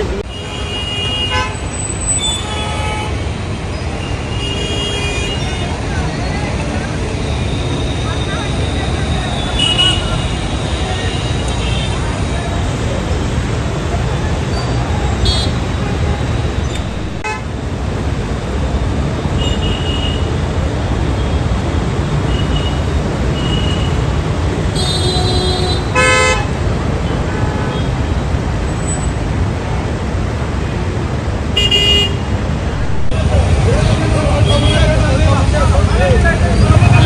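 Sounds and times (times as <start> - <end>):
vehicle horns honking: 0.0 - 3.3, 4.0 - 5.9, 7.4 - 12.1, 14.6 - 17.4, 24.7 - 28.1, 31.6 - 33.1
road traffic rumbling: 0.0 - 37.0.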